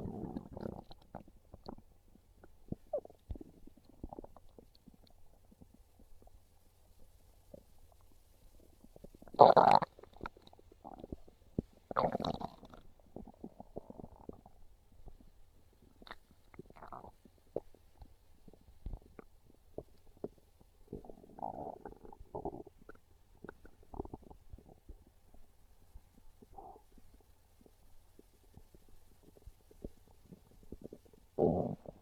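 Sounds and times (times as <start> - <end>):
stomach growling and gurgling: 0.0 - 32.0.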